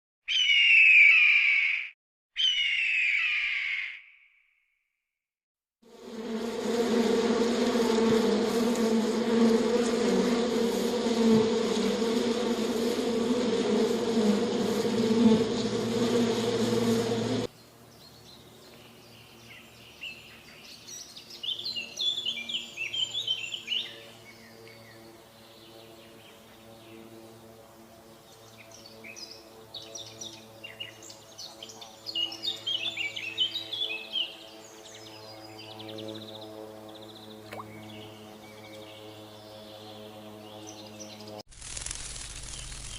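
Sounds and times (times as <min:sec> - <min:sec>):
bird chirps trilling: 0:00.3 - 0:04.4
insect buzzing loudly: 0:05.8 - 0:17.5, 0:32.1 - 0:42.9.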